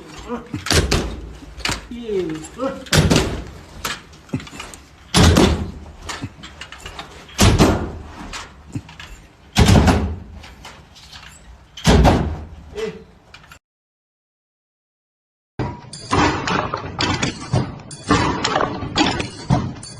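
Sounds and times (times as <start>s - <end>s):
heavy bangs: 5.1s - 6.0s.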